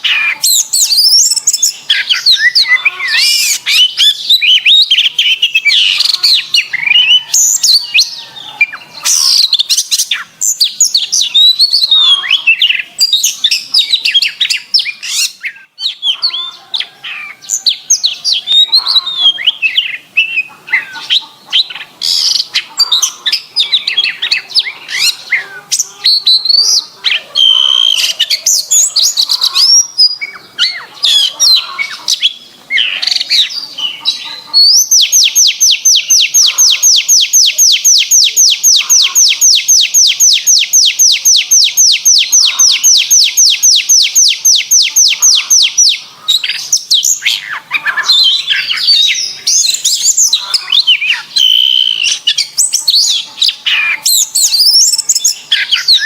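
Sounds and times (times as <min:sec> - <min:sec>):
canary rapid trill: 0:00.0 - 0:56.0
canary singing: 0:00.0 - 0:56.0.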